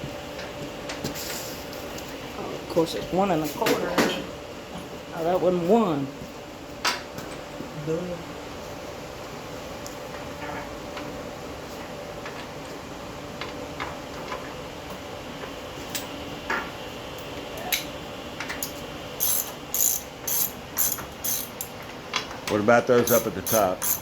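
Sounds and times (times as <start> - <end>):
ratchet wrench turning bolts: 19.2 - 21.7, 23.0 - 24.0.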